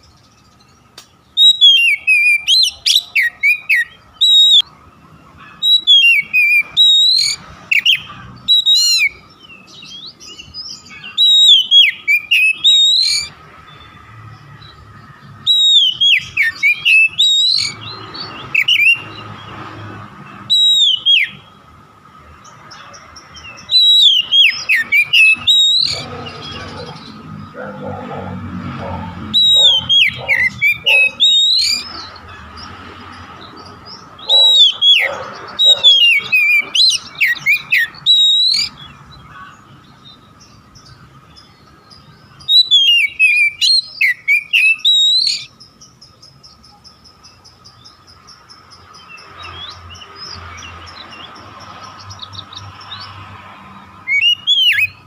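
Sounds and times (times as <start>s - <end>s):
magpie-robin whistled song: 0.0s - 4.7s, 5.3s - 14.0s, 14.6s - 19.5s, 20.3s - 21.7s, 22.4s - 27.8s, 29.2s - 32.3s, 33.9s - 51.3s, 54.0s - 55.0s.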